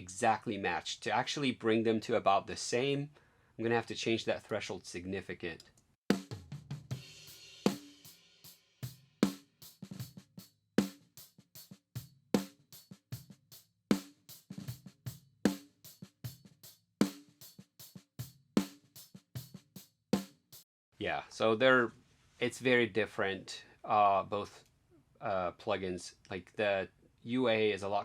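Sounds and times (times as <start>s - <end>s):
drum kit slow beat: 6.1s - 20.6s.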